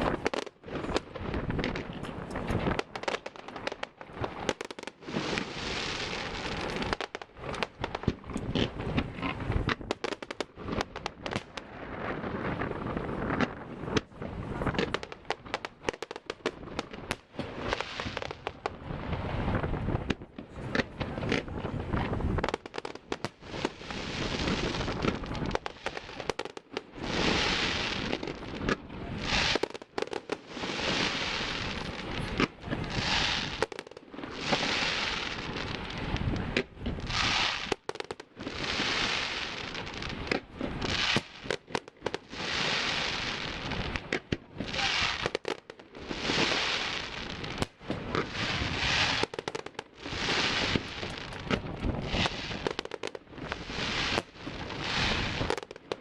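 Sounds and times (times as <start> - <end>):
fireworks bangs: 0.0 - 56.0
crackling hiss of bursting shells: 37.0 - 56.0.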